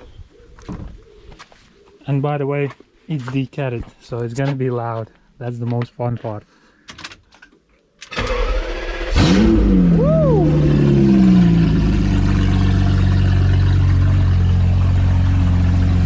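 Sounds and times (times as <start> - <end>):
car engine cranking and idling: 8.1 - 16.0.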